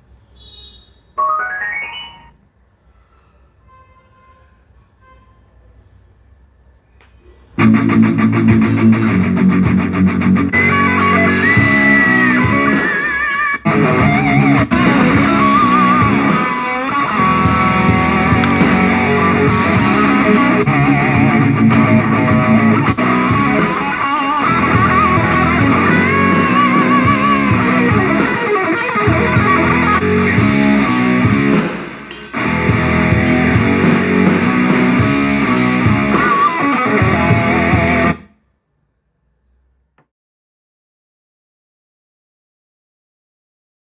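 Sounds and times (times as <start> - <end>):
instrumental electric guitar music: 7.6 - 38.3.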